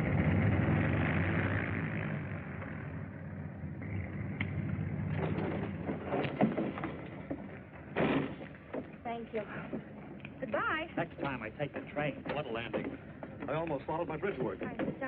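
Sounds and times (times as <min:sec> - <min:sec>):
airplane engines rumbling: 0:00.0 - 0:15.0
short knocks: 0:11.2 - 0:15.0.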